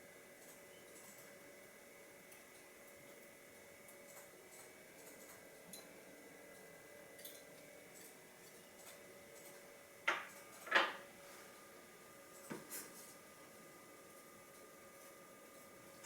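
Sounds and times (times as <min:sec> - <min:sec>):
faint ticks of small parts: 0:00.4 - 0:01.4, 0:02.3 - 0:05.9, 0:06.5 - 0:09.7.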